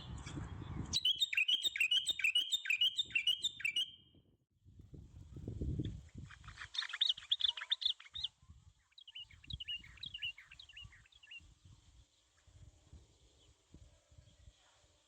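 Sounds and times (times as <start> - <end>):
songbird chirping: 0.9 - 4.1, 6.2 - 12.4.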